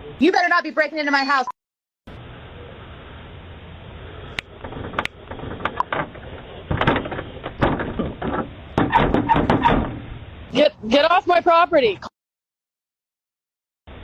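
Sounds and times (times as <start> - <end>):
door rattling against frame: 4.6 - 10.2.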